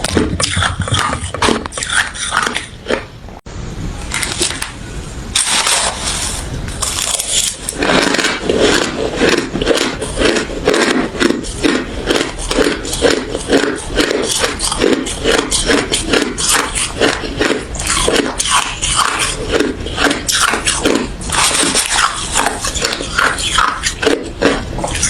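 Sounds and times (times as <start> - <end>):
chewing crushed ice: 6.8 - 25.0.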